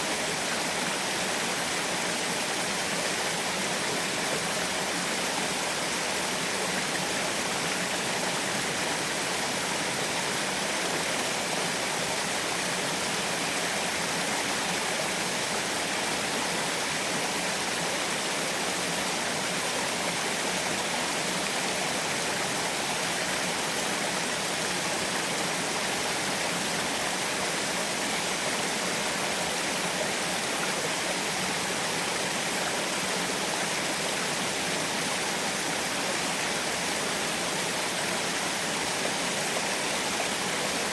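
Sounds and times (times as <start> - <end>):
small waterfall splashing: 0.0 - 40.9.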